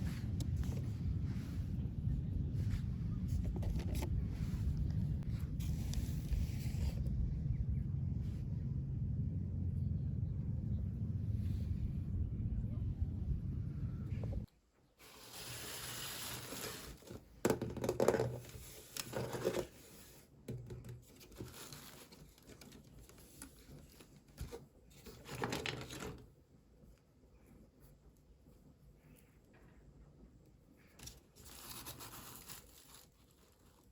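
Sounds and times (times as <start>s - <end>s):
packaging tearing and crinkling: 31.4s - 33.9s.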